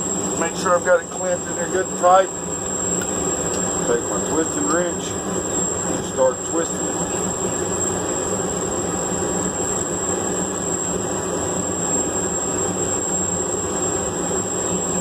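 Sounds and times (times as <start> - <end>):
high-pitched whine: 0.0 - 15.0.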